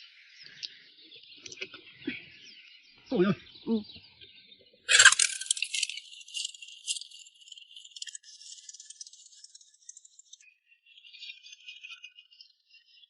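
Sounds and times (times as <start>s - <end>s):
high-pitched rattling and jingling: 4.9s - 10.4s.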